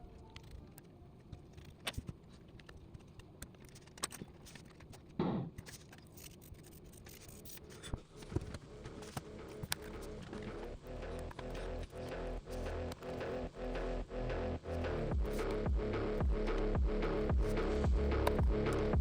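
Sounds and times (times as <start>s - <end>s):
faint clicks and scrapes: 0.0s - 15.7s.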